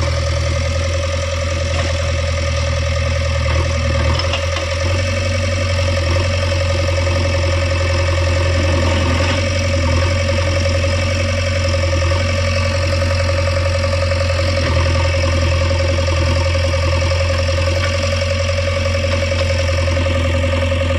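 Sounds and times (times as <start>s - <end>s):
diesel engine running: 0.0s - 20.9s
high engine whine: 0.0s - 20.9s.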